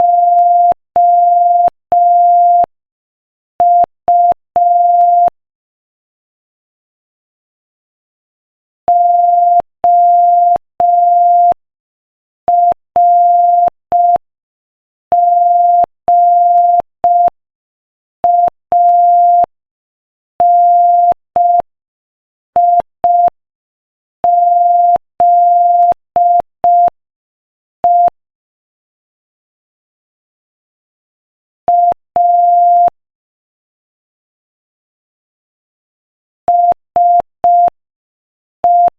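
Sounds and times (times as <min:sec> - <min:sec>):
morse code tone: 0:00.0 - 0:02.7, 0:03.6 - 0:05.3, 0:24.2 - 0:26.9, 0:31.7 - 0:33.0, 0:36.5 - 0:37.8, 0:38.6 - 0:38.9.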